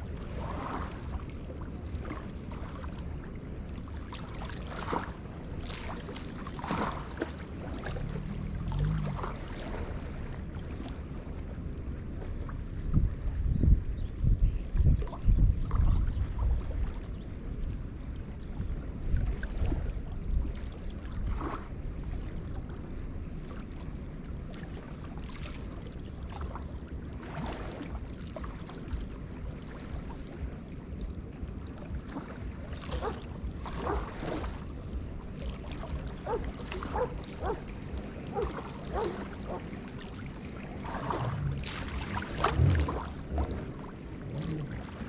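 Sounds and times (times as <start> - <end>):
waves lapping against shore: 0.0 - 13.0, 15.6 - 45.0
wind rumble on microphone: 0.0 - 45.0.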